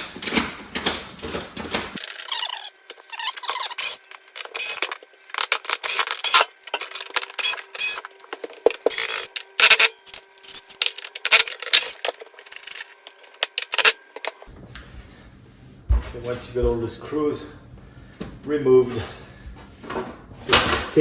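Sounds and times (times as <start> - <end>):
screwdriver clicks and metal scrapes: 2.0 - 14.5.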